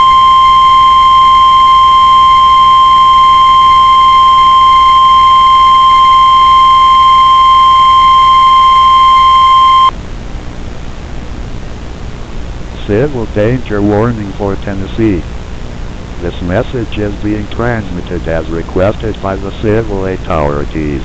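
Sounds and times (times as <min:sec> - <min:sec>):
steady warning alarm tone: 0:00.0 - 0:09.9.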